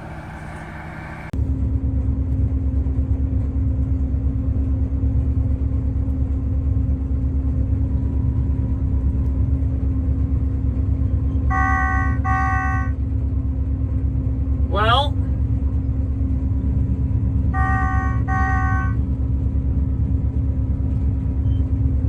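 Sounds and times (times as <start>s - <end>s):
combine harvester engine drone: 0.0s - 22.0s.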